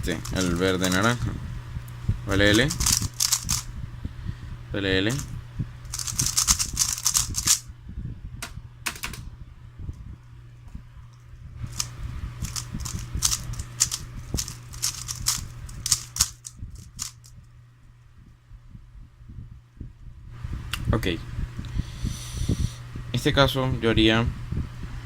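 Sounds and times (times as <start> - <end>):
puzzle cube plastic clacking: 0.0 - 1.2, 2.5 - 3.6, 5.9 - 7.6, 11.7 - 17.2
steady low hum: 0.0 - 25.0.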